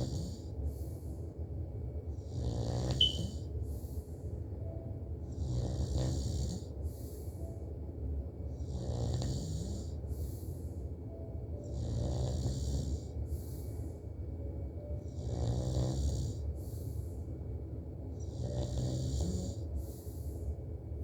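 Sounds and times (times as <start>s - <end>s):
man snoring: 5.4s - 6.6s, 8.7s - 9.8s, 11.8s - 13.1s, 15.2s - 16.4s.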